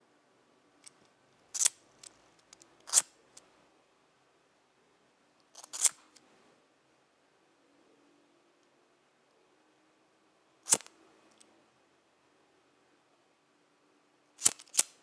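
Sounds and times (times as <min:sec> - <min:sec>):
small clicks and scrapes: 0:00.8 - 0:03.5, 0:05.4 - 0:06.3, 0:10.7 - 0:11.5, 0:14.4 - 0:15.0.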